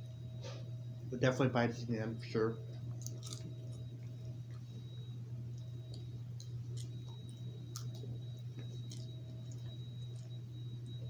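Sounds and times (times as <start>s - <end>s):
steady low hum: 0.0s - 11.0s
popcorn chewing crunches: 2.8s - 11.0s.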